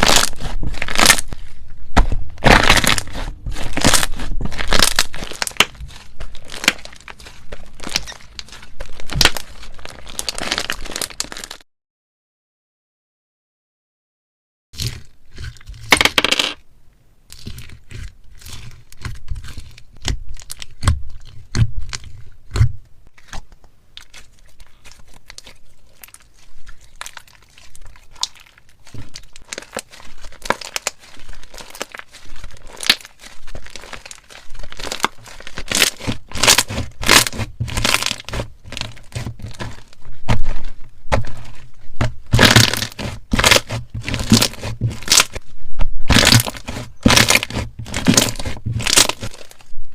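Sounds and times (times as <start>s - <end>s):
slime and ice squeezed by hand: 0.0s - 11.6s, 24.0s - 45.4s, 46.0s - 49.8s.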